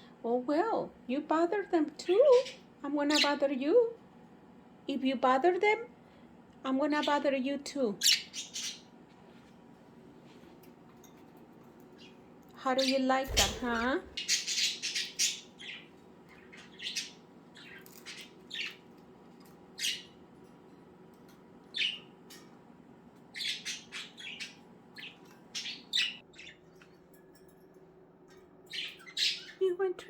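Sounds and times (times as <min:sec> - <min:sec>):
budgerigars chirping and squawking: 0:02.3 - 0:02.6, 0:08.0 - 0:08.8, 0:13.3 - 0:18.8, 0:19.8 - 0:20.2, 0:21.8 - 0:22.1, 0:23.4 - 0:26.6, 0:28.7 - 0:29.6.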